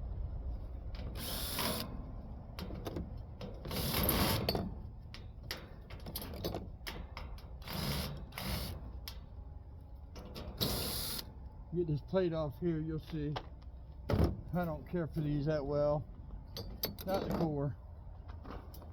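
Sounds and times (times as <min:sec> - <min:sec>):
power drill backing out screws: 0:01.1 - 0:01.9, 0:03.7 - 0:04.6.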